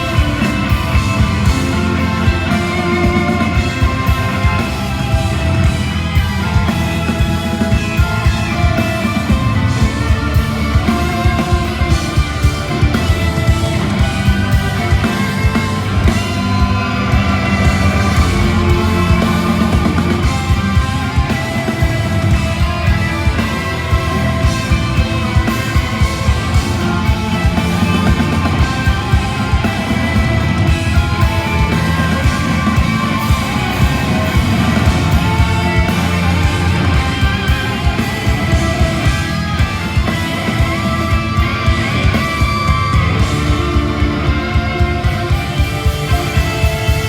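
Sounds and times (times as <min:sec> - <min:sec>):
drum beat: 0:00.0 - 0:47.0
electric guitars: 0:00.0 - 0:47.0
live rock band playing: 0:00.0 - 0:47.0.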